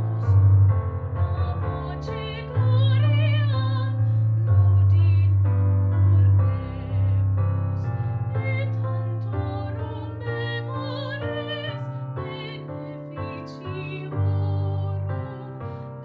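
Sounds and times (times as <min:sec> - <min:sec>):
sustained accompaniment with bass: 0:00.0 - 0:11.8.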